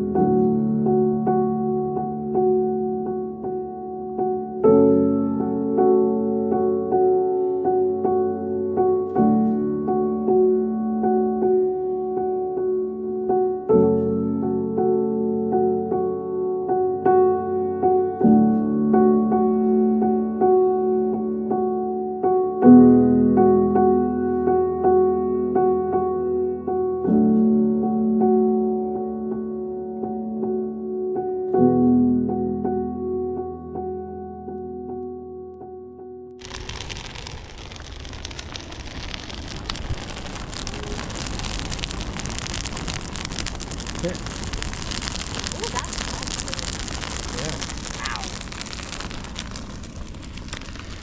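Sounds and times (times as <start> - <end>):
gentle piano repeated notes: 0.0 - 36.4
fire crackling and popping: 8.9 - 10.6, 36.4 - 51.0.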